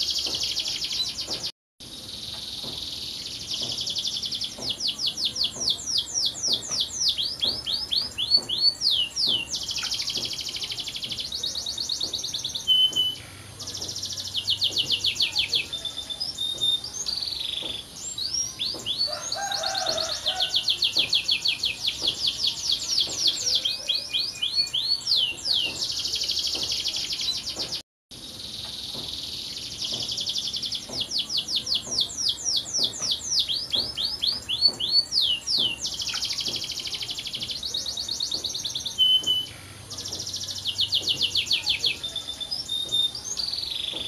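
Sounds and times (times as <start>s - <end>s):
canary singing trills: 0.0s - 27.8s, 28.4s - 44.0s.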